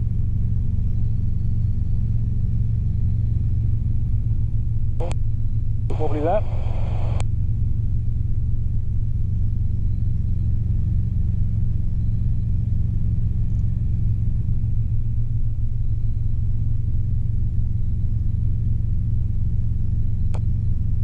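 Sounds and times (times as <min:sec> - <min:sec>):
helicopter engine and rotor drone: 0:01.0 - 0:07.2.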